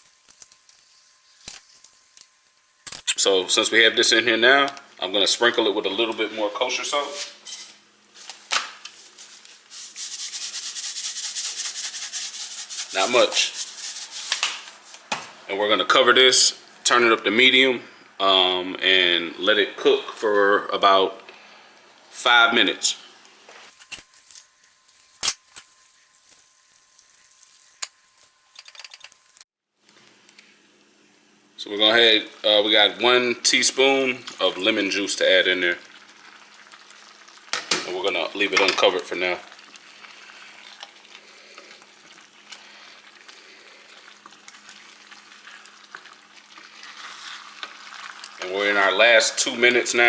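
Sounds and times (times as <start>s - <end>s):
sauce simmering in a pan: 29.9s - 38.4s, 39.4s - 49.7s.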